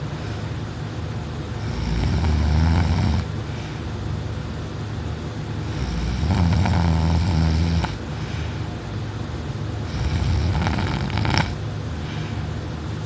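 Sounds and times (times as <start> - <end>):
person snoring loudly: 1.6 - 3.3, 5.6 - 8.0, 9.9 - 11.6
quiet breathing: 3.2 - 4.0, 7.8 - 8.8, 9.8 - 12.7.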